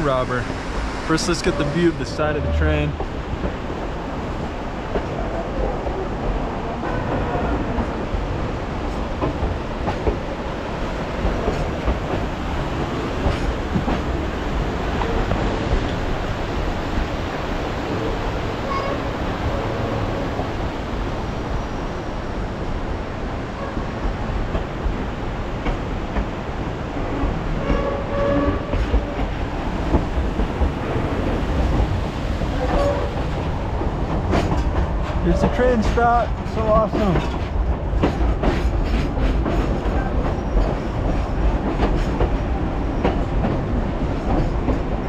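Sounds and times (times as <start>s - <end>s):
train cars rumbling: 0.0s - 45.0s
sharp clacks and knocks: 34.0s - 42.4s.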